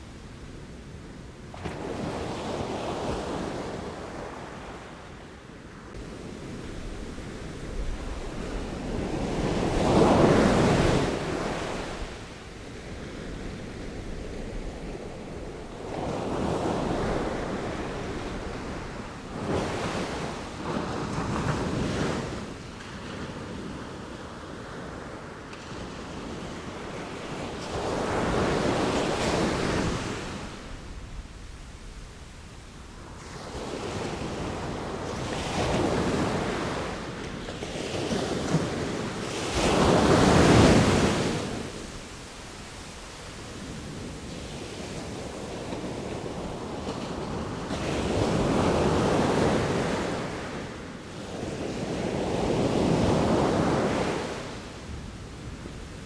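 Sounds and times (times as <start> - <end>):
sea waves breaking: 37.6 - 50.5.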